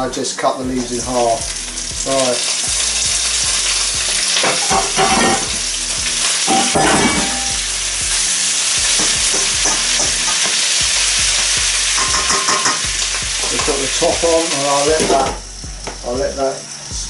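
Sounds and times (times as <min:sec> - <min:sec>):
oil sizzling in a wok: 0:00.8 - 0:17.0
utensil clinking against pan: 0:12.0 - 0:13.8.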